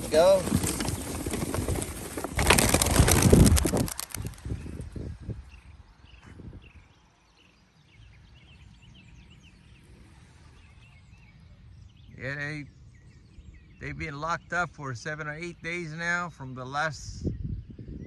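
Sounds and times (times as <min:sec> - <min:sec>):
pigeon wingbeats clattering: 0:00.0 - 0:04.4
small birds chirping: 0:00.0 - 0:18.0.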